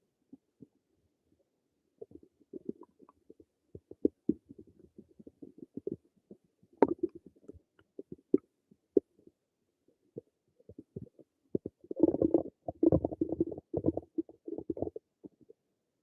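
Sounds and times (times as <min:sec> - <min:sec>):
stomach gurgling: 0:01.9 - 0:15.7.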